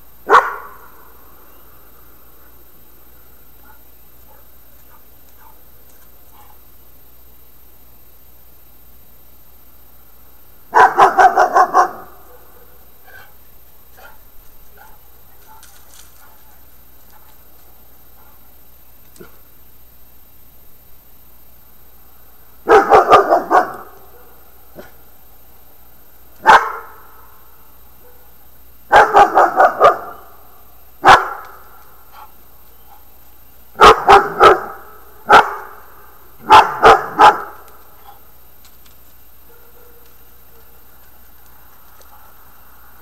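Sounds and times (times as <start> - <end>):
dog barking: 0.3 - 0.9, 3.6 - 5.7, 10.7 - 13.3, 14.0 - 17.4, 22.6 - 25.0, 26.4 - 27.1, 28.0 - 30.4, 31.0 - 32.3, 33.8 - 38.2, 39.4 - 40.8.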